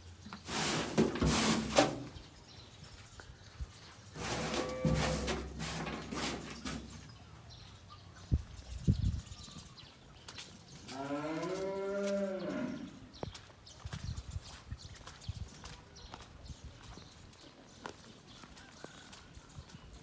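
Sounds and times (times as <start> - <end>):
rustling noise: 0.3 - 2.5, 4.1 - 7.2.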